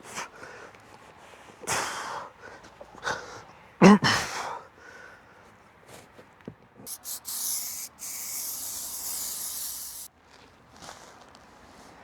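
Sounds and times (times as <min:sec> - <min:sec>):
aerosol can spraying: 0:06.9 - 0:10.1.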